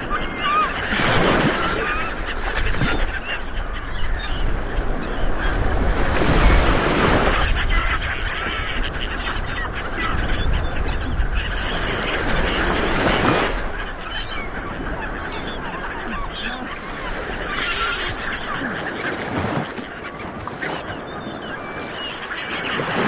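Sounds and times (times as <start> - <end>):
faint bird calls: 0.0 - 23.0
ocean waves breaking on shore: 0.0 - 23.0.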